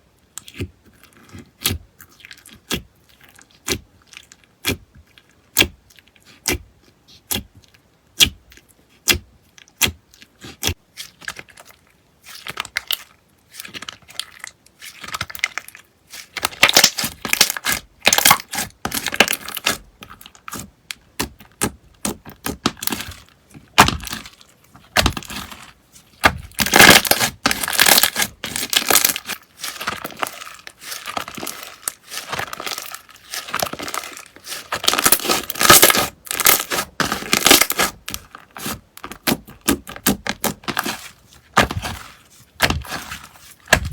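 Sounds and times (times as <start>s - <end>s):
slime crackling and crunching: 9.8s - 43.9s.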